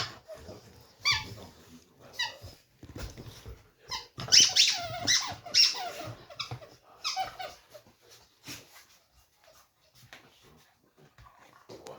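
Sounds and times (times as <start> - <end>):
squeaky toy squeaking: 0.0 - 0.3, 1.0 - 1.3, 3.9 - 7.7.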